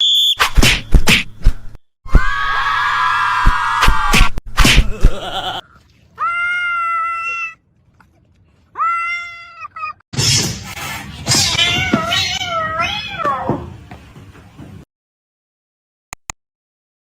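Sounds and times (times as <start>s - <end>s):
cat yowling: 6.2s - 7.6s, 8.8s - 10.0s.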